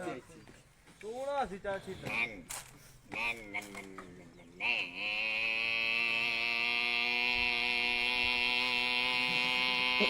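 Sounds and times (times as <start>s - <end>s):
boy imitating motorcycle engine: 4.6s - 10.0s.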